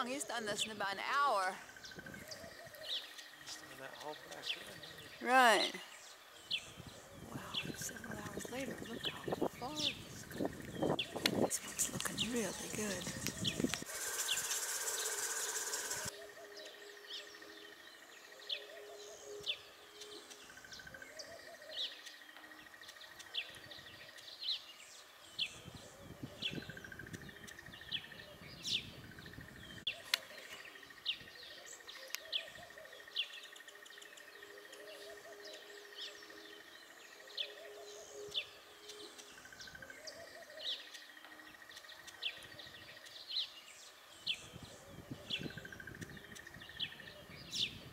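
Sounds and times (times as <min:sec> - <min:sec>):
birds chirping: 0:00.0 - 0:47.9
high insect trill: 0:08.0 - 0:16.2
loud hiss: 0:13.7 - 0:16.1.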